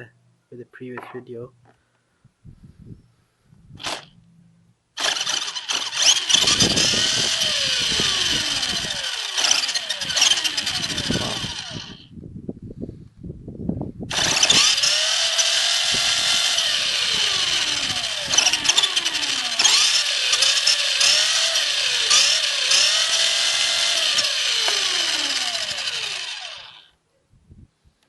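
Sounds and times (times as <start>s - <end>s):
electric motor high-pitched whine: 5.0s - 12.1s, 14.1s - 26.9s.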